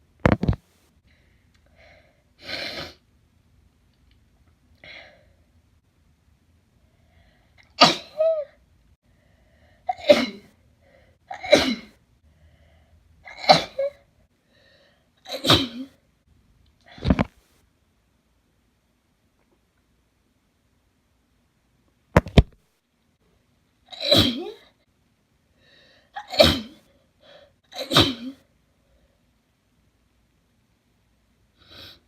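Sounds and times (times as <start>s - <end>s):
person sneezing: 7.6s - 8.5s, 9.9s - 10.5s, 11.3s - 12.0s, 13.3s - 14.0s, 15.2s - 16.0s, 23.9s - 24.7s, 26.2s - 26.9s, 27.7s - 28.5s.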